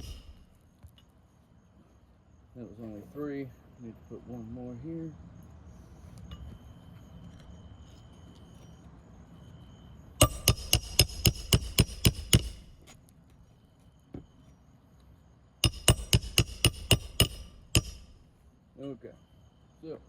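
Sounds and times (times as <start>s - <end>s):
hammer striking nail: 0.0s - 0.4s, 10.2s - 12.9s, 15.6s - 18.3s.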